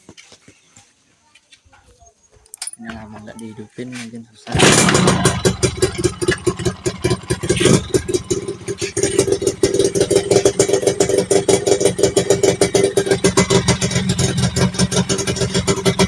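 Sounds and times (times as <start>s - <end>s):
two-stroke engine idling: 4.5s - 16.0s.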